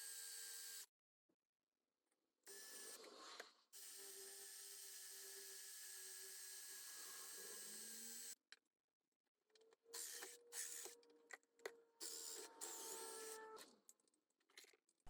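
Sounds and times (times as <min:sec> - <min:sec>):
drill press motor drilling: 0:03.8 - 0:08.3, 0:12.0 - 0:13.6.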